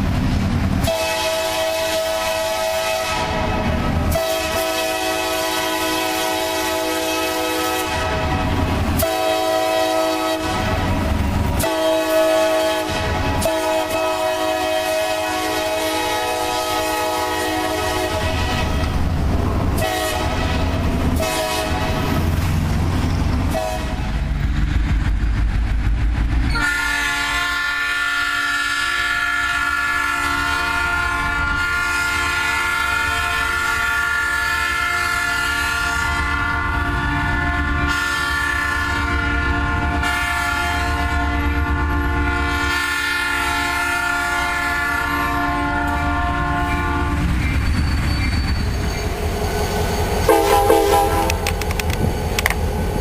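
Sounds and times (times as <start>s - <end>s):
locomotive air horn chord: 0.8s - 11.0s, 11.6s - 18.9s, 19.8s - 22.2s, 23.5s - 24.1s, 26.6s - 47.2s, 50.2s - 52.5s.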